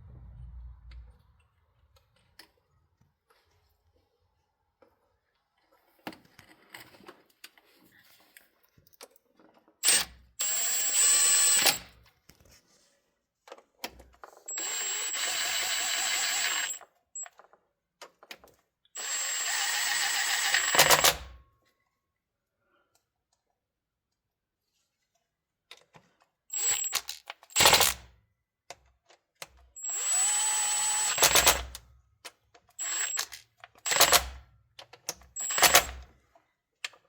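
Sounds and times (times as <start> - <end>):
power drill running: 9.8 - 11.9, 14.5 - 16.8, 19.0 - 21.3, 26.5 - 28.0, 29.8 - 31.8, 32.8 - 34.4, 35.4 - 36.0.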